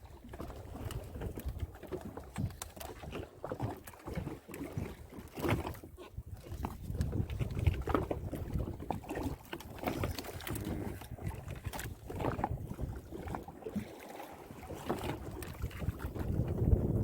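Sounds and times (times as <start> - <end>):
knocks and splashes: 0.0 - 17.0
water lapping against hull: 0.0 - 17.0
wind buffeting microphone: 6.1 - 13.3, 15.0 - 17.0.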